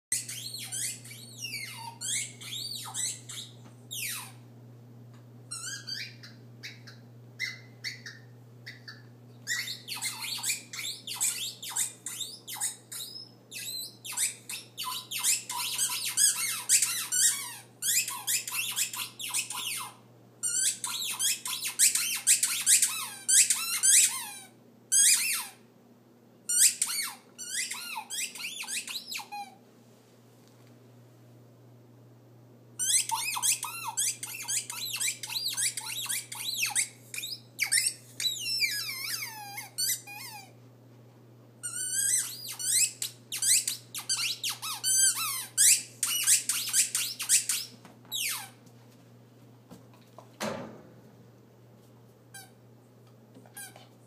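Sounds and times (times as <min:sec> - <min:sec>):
squeaky dog toy squeaking: 0:00.1 - 0:04.4, 0:05.5 - 0:25.6, 0:26.5 - 0:29.6, 0:32.8 - 0:40.6, 0:41.6 - 0:48.6, 0:52.3 - 0:52.6, 0:53.6 - 0:53.8.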